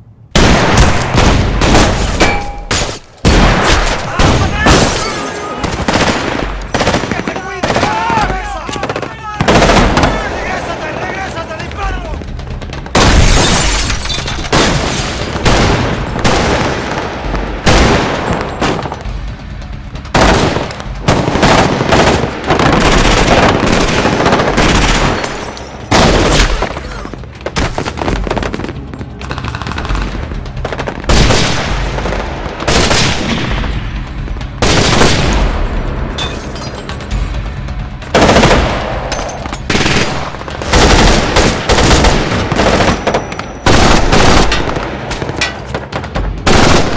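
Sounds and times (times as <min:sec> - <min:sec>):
gunfire with echo: 0:00.4 - 0:08.4, 0:09.4 - 0:11.0, 0:14.5 - 0:19.2, 0:20.2 - 0:26.8, 0:38.1 - 0:46.9.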